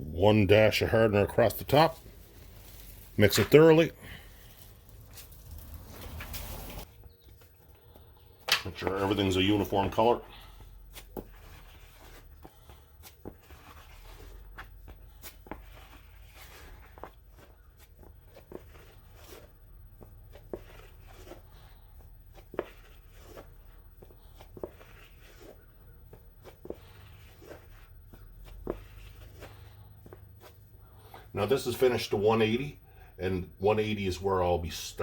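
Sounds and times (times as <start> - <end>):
low steady hum: 0.0 - 35.0.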